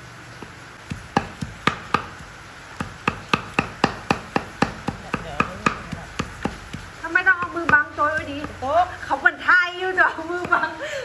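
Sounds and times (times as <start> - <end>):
knife chopping on cutting board: 0.8 - 8.6.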